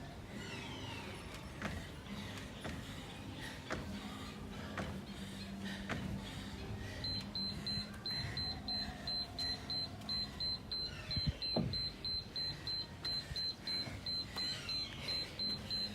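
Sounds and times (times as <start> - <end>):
short high timer beeps: 7.1 - 15.9.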